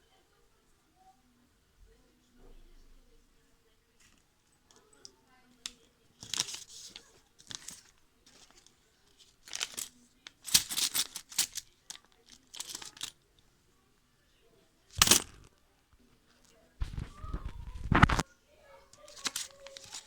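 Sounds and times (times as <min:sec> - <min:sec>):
rustling and crinkling: 0:05.5 - 0:13.2, 0:14.9 - 0:18.3, 0:18.9 - 0:20.0.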